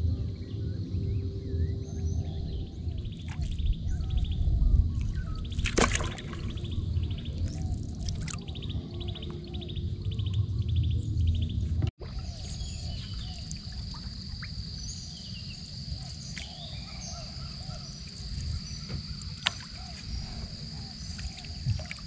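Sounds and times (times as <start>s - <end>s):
low rumble: 0.0s - 15.8s
birds calling and chirping: 0.5s - 22.0s.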